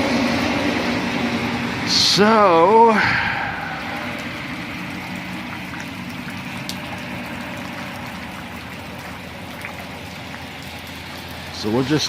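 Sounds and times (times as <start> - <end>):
steady rain falling: 0.0 - 12.0
small drip ticks: 4.8 - 12.0.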